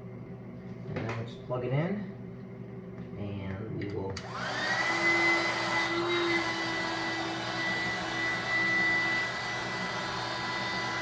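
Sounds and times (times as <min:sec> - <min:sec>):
electric air pump whining: 0:04.2 - 0:11.0.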